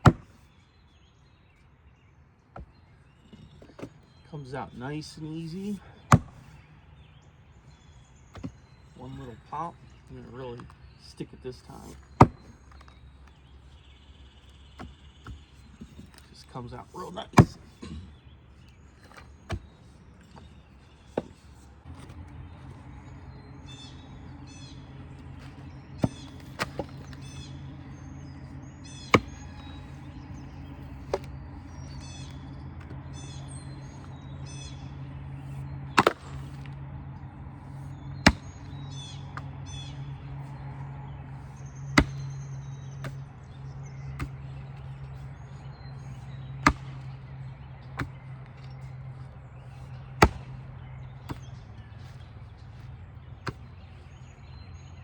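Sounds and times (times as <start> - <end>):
birds chirping: 0.0 - 55.0
low hum: 21.6 - 55.0.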